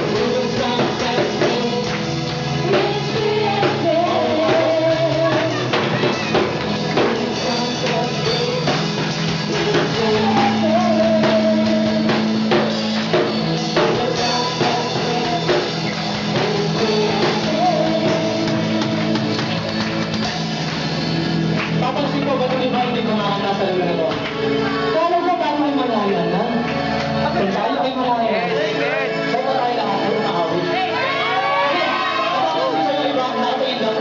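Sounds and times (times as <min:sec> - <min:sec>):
person singing: 0:00.0 - 0:20.0
steady drum beat: 0:00.0 - 0:24.5
band playing a song: 0:00.0 - 0:34.0.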